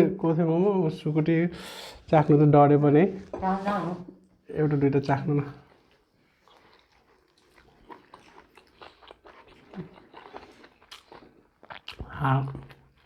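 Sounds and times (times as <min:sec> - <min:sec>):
close-mic chewing: 0:03.4 - 0:13.0.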